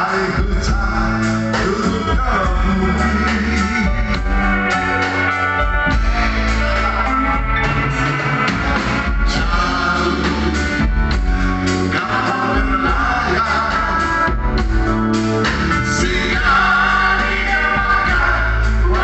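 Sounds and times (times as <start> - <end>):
live band playing: 0.0 - 19.0
person singing: 9.2 - 10.8, 11.8 - 14.4, 15.8 - 19.0.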